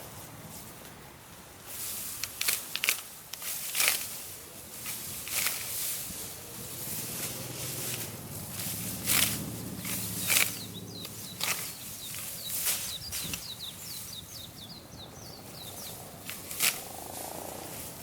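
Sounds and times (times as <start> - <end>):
rustles in vegetation: 0.0 - 18.0
small bird chirping: 8.0 - 17.2.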